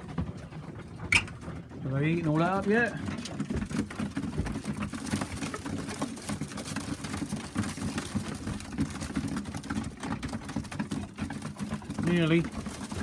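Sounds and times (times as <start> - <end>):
pigeons pecking grain: 0.0 - 13.0.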